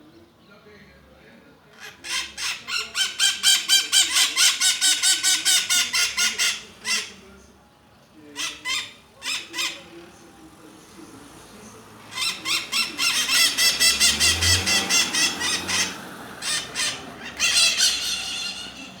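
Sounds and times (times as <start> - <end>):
parrots squawking: 1.8 - 7.3, 8.3 - 10.3, 12.0 - 19.0.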